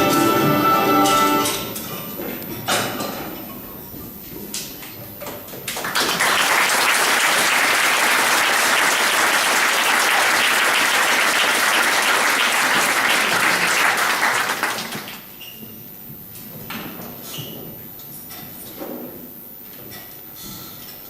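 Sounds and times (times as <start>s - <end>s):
audience applauding: 5.8s - 15.3s.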